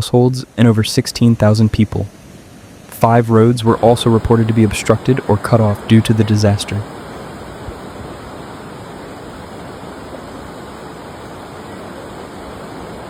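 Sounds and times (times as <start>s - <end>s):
steady rushing noise: 0.0s - 13.0s.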